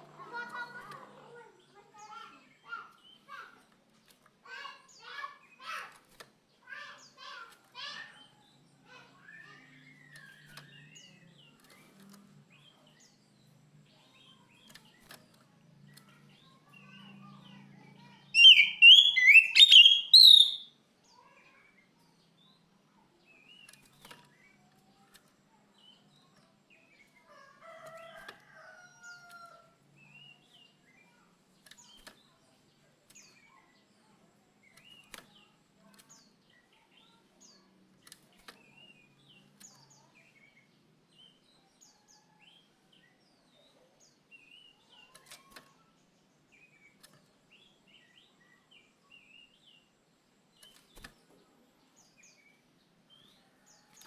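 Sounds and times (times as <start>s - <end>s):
faint bird chirps: 15.9s - 25.2s
bird singing high rising notes: 18.4s - 20.7s.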